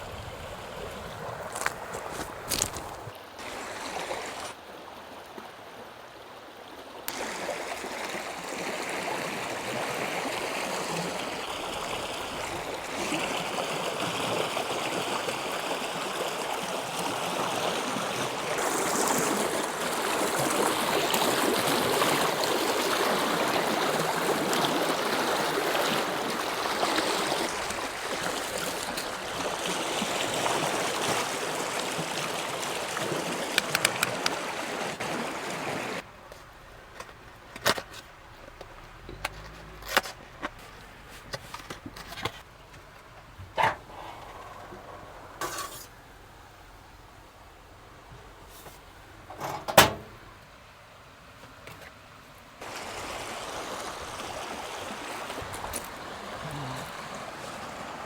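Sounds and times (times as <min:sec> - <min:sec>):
river rushing: 0:00.0 - 0:04.8, 0:07.1 - 0:36.2, 0:52.6 - 0:58.0.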